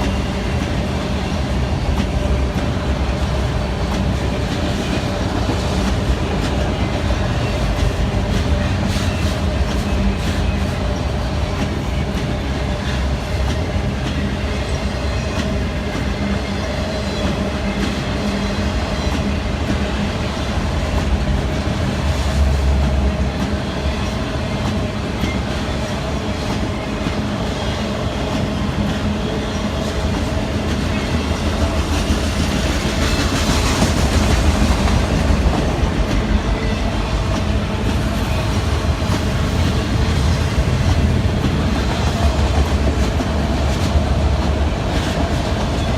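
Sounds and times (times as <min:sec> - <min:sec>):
freight train rumbling past: 0:00.0 - 0:45.9.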